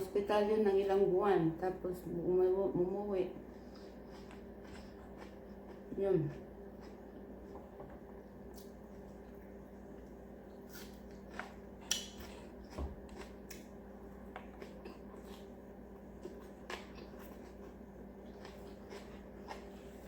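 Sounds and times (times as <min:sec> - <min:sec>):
steady low hum: 0:00.0 - 0:20.0
chewing and food handling clicks: 0:06.8 - 0:15.5, 0:16.2 - 0:19.9.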